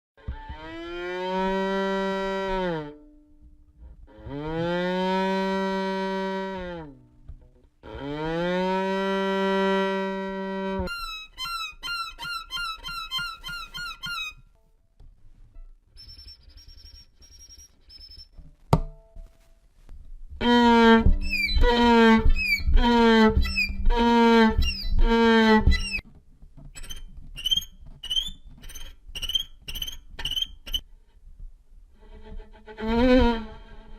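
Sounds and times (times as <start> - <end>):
violin imitating animal calls: 20.4 - 26.0.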